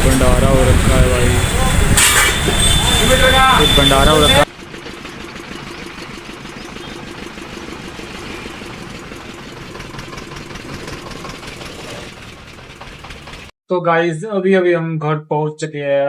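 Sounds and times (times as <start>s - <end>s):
vehicle engine running: 3.3s - 13.5s.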